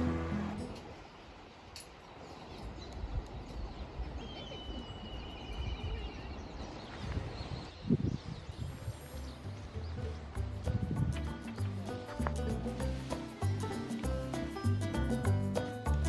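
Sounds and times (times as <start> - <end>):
music: 0.0 - 0.7, 8.8 - 16.0.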